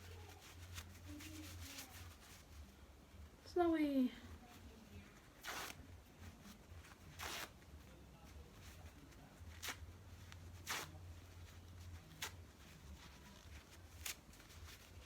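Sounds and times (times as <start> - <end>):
paper tearing: 5.3 - 7.7, 9.5 - 15.0.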